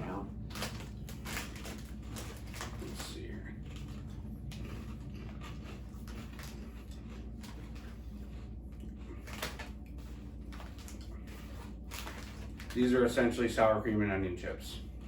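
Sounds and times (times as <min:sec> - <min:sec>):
low hum: 0:00.0 - 0:15.0
crisps crunching: 0:00.1 - 0:13.9
crisp packet crackling: 0:00.4 - 0:04.6, 0:10.5 - 0:13.3.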